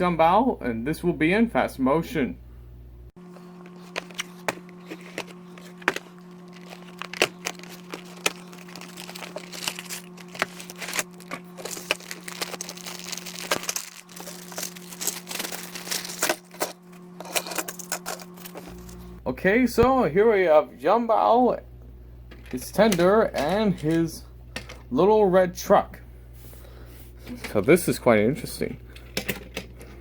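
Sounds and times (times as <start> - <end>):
steady low hum: 0.0 - 30.0
plastic crinkling: 3.3 - 19.0.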